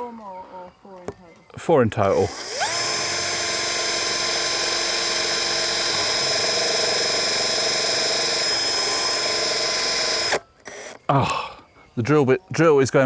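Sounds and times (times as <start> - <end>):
electric drill motor running: 2.0 - 11.0.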